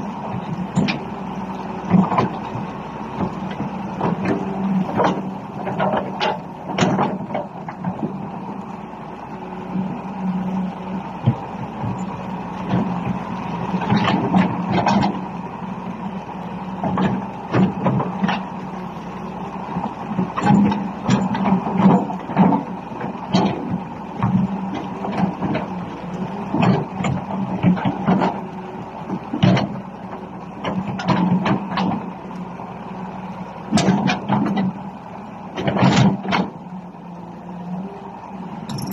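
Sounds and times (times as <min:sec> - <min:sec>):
excavator engine drone: 0:00.0 - 0:38.9
sharp metal clanks and knocks: 0:38.7 - 0:38.9.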